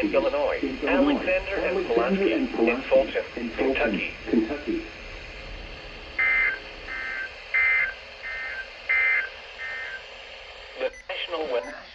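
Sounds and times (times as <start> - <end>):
two-tone digital squawks: 6.2 - 10.0.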